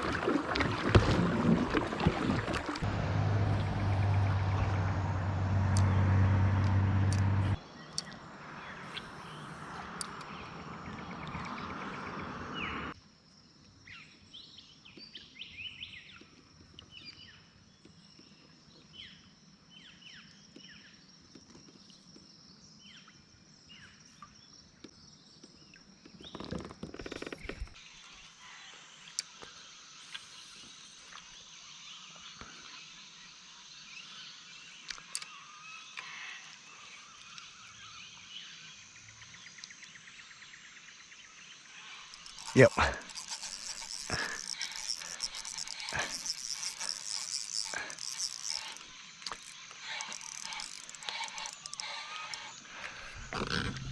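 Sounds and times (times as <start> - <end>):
insect drone: 0.0 - 14.4, 26.2 - 53.9.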